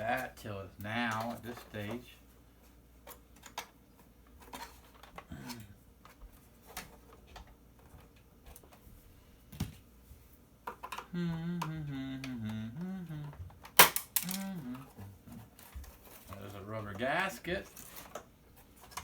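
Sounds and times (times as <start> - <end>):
plastic parts clicking and knocking: 3.0 - 5.3, 10.6 - 11.7, 13.2 - 19.0
man murmuring: 11.1 - 13.5, 14.2 - 15.4.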